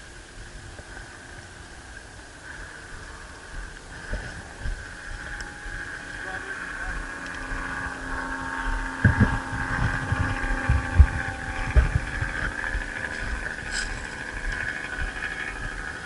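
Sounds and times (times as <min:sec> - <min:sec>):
high-pitched hum: 0:00.0 - 0:16.0
low thumps and knocks: 0:08.7 - 0:15.8.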